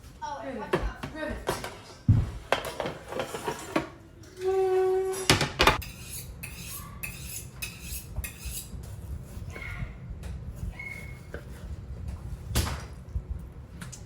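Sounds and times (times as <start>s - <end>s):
dishes and cutlery clinking: 5.6s - 8.7s.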